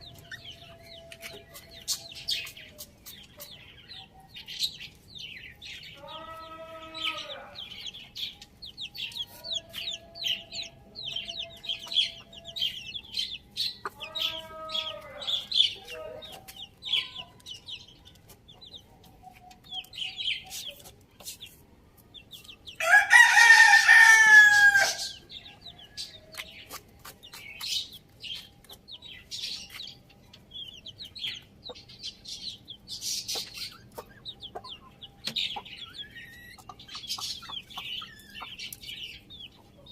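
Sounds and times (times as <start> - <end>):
chickens clucking: 0.0 - 39.9
small birds chirping: 0.0 - 39.9
rooster crowing: 22.8 - 25.2.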